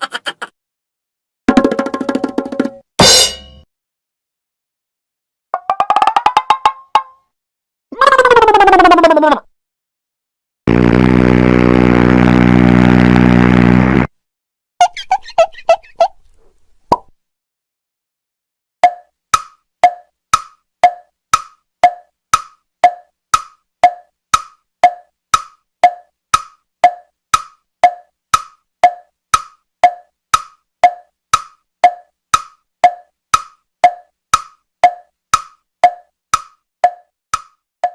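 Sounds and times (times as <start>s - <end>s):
hollow wood block knocks: 18.8s - 37.9s.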